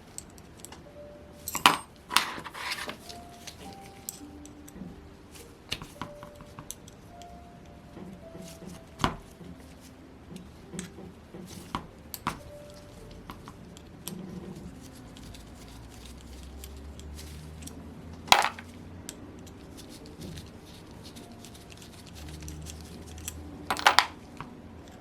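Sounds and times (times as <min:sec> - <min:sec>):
small metal tools clacking: 0:14.8 - 0:18.8, 0:19.4 - 0:24.5.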